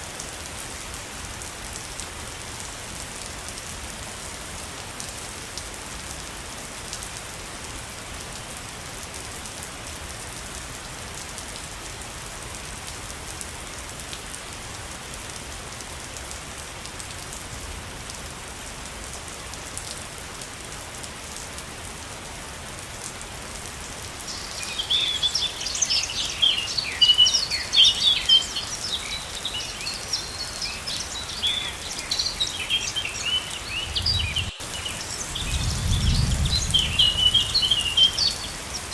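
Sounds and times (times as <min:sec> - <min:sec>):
waterfall rushing: 0:24.1 - 0:35.8, 0:36.5 - 0:38.9
birds chirping and trilling: 0:24.2 - 0:38.9.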